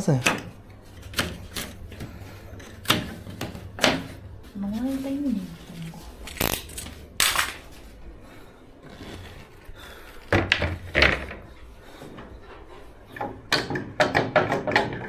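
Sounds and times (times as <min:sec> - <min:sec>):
wooden boards knocking: 0:00.2 - 0:04.3, 0:10.3 - 0:11.6, 0:13.1 - 0:15.0.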